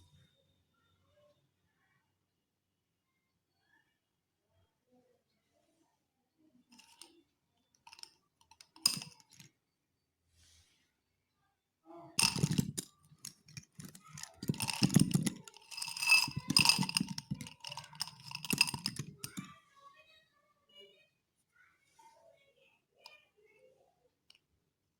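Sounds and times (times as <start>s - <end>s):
slate pencils clinking: 7.9s - 9.4s, 12.2s - 19.5s.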